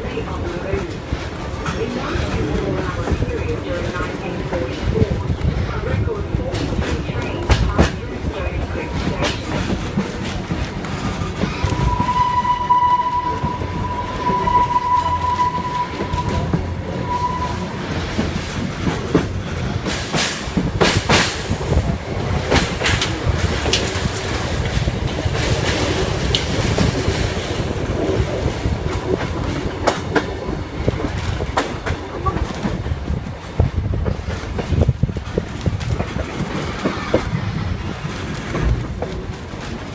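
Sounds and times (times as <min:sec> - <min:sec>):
train wheels clacking over rails: 0:00.2 - 0:39.9
high steady squeal: 0:11.6 - 0:18.0.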